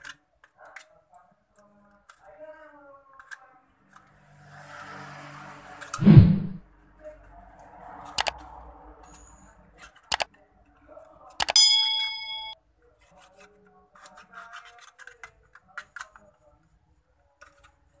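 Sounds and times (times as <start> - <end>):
small metal object clinking: 11.4 - 12.6.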